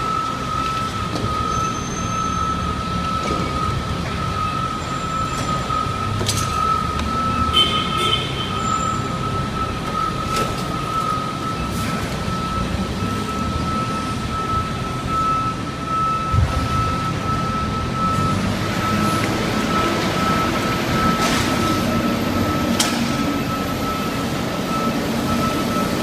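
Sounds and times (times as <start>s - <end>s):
diesel engine rumble: 0.0s - 26.0s.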